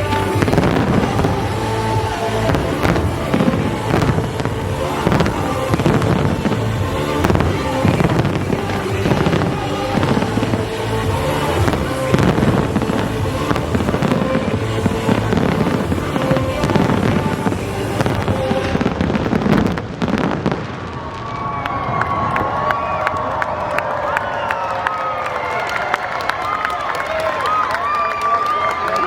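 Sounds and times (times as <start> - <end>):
loud show music: 0.0 - 20.3
fireworks bursting and crackling: 0.0 - 22.4.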